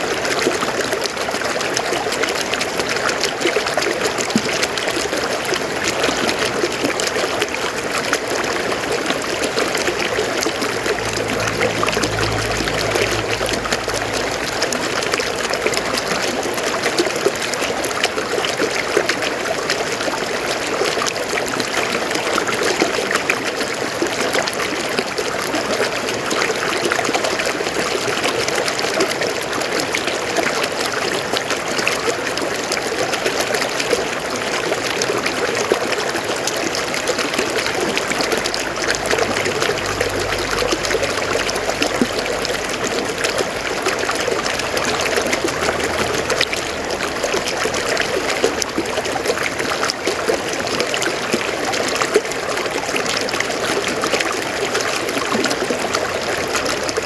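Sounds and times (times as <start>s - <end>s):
river water flowing over rocks: 0.0s - 57.0s
faint low rumble: 8.4s - 16.6s, 37.5s - 49.1s.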